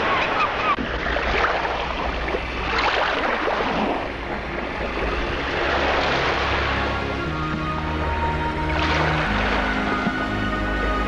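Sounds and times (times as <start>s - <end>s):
constant low rumble: 0.0s - 11.0s
steady rushing noise: 0.8s - 11.0s
music with held notes: 4.2s - 11.0s.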